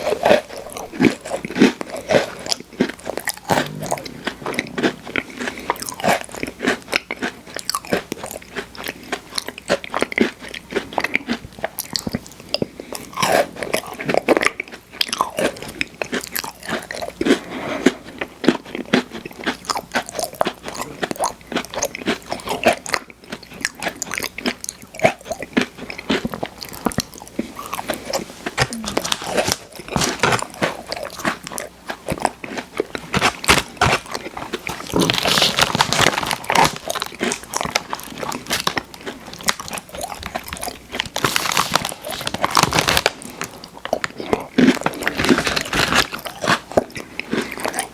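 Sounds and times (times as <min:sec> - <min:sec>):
crunching and chewing cookies: 0:00.0 - 0:47.9.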